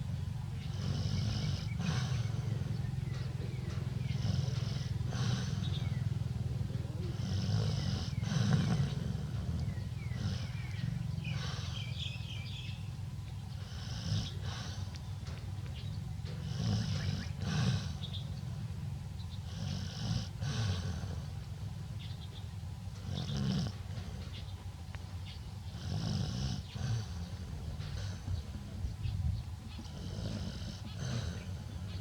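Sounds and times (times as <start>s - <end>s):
woman snoring loudly: 0.7s - 2.9s, 4.1s - 5.8s, 6.9s - 10.6s, 16.4s - 18.0s.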